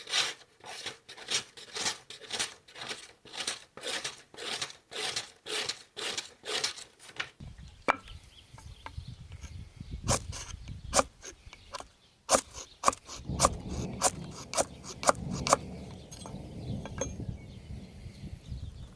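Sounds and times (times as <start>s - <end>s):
knife scraping on sharpening steel: 10.1s - 11.4s, 12.3s - 15.6s
sharp clicks and knocks: 10.1s - 17.2s
low rumble: 13.2s - 18.9s.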